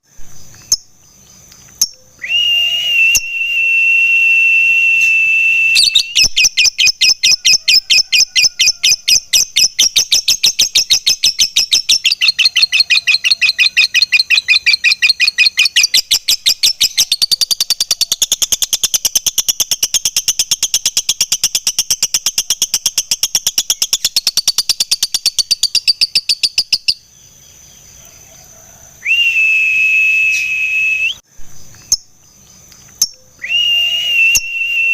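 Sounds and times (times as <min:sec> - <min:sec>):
high whistle-like tone: 0:02.2 - 0:06.4, 0:29.0 - 0:31.2, 0:33.4 - 0:34.9
lovebird chattering trill: 0:05.8 - 0:27.6.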